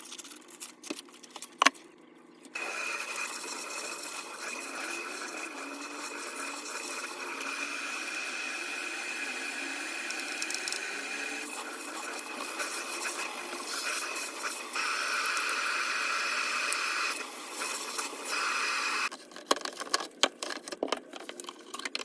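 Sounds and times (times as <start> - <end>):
appliance motor whining: 2.5 - 19.1.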